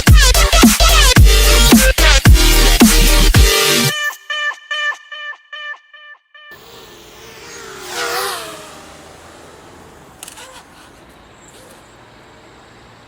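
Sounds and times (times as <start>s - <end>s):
drone motors whining: 6.5s - 12.1s
sharp clicks: 10.2s - 10.7s.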